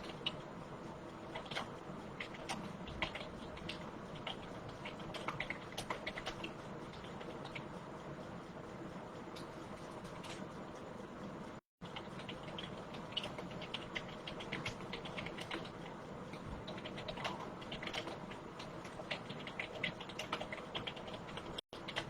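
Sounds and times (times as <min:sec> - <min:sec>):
keyboard typing: 0:12.0 - 0:22.0.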